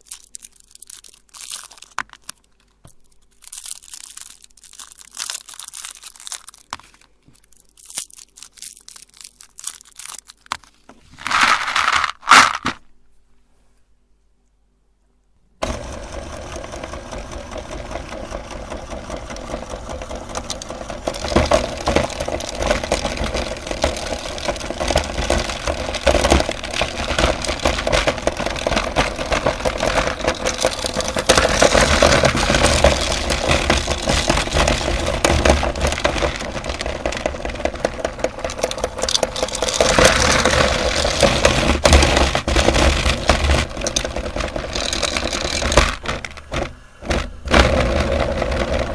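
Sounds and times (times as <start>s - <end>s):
candy crunching in grinder: 0.0s - 12.8s, 15.6s - 48.9s
electric meat grinder running: 15.6s - 48.9s.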